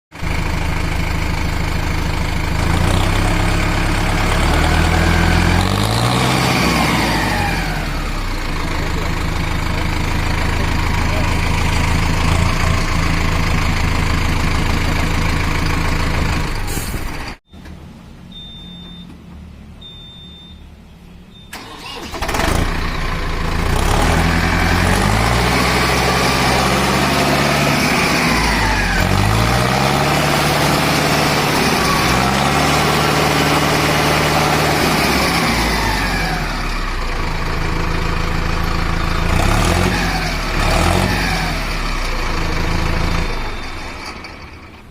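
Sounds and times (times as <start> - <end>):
tractor diesel engine idling: 0.1 - 44.9
engine starting and revving: 1.8 - 17.4, 21.4 - 44.9
short high beeps: 18.3 - 19.1, 19.8 - 20.6, 21.3 - 21.6.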